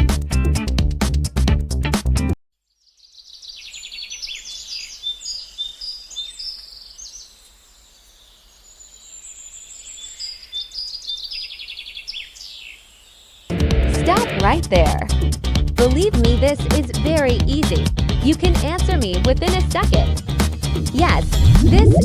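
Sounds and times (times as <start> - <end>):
small birds chirping: 2.7 - 13.5.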